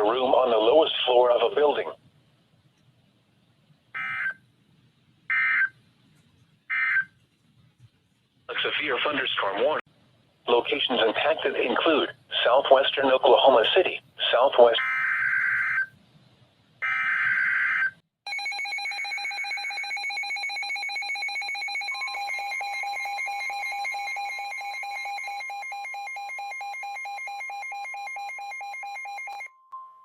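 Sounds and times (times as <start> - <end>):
alarm beeping rapidly: 18.3 - 29.5.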